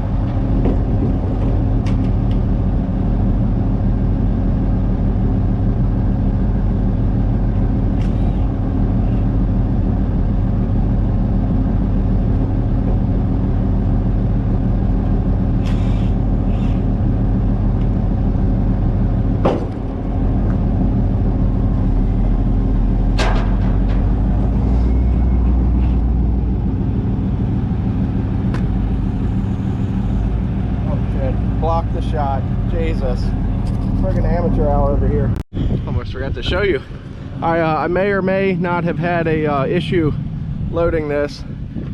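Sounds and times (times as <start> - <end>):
vehicle engine droning: 0.0 - 41.9.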